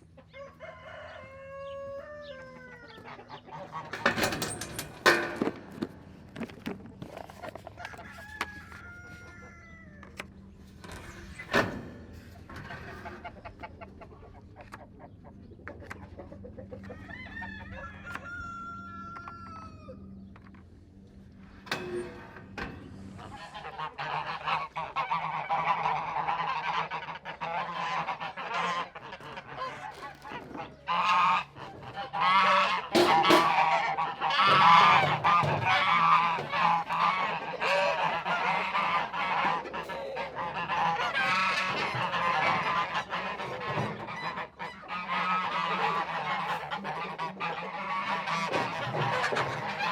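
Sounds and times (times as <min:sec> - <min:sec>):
ducks quacking: 0:00.0 - 0:18.8, 0:21.6 - 0:49.9.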